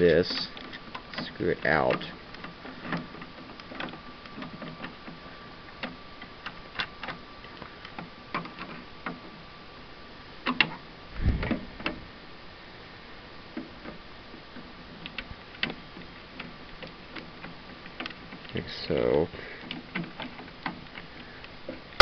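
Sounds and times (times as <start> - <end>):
small clicks and taps: 14.6 - 22.0.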